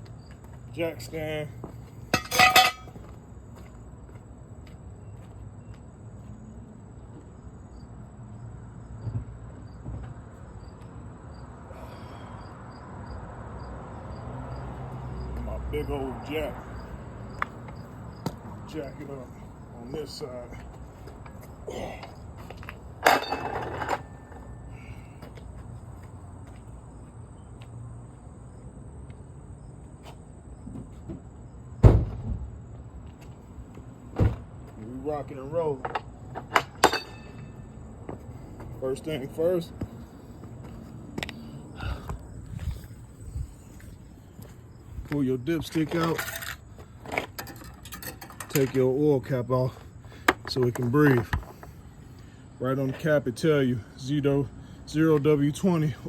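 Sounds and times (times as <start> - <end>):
crickets chirping: 0.0 - 56.0
dull thump: 31.8 - 32.5, 34.2 - 34.5.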